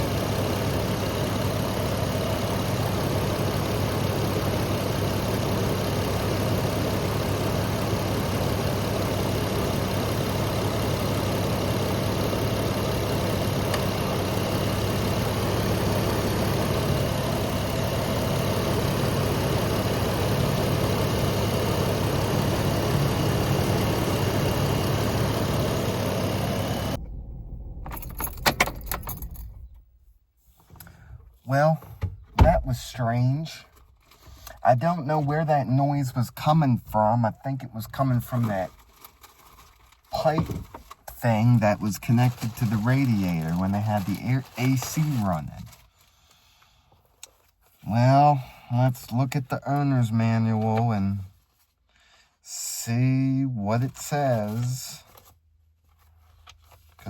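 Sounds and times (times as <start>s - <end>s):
car engine idling: 0.0s - 30.1s
air conditioning running: 0.0s - 57.0s.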